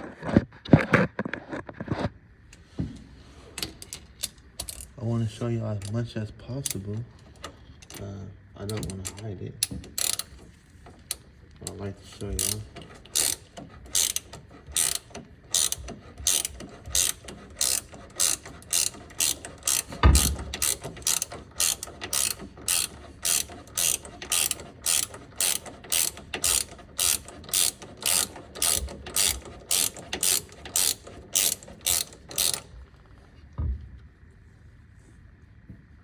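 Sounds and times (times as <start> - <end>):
ratchet wrench clicking: 3.6 - 4.9, 8.7 - 32.7.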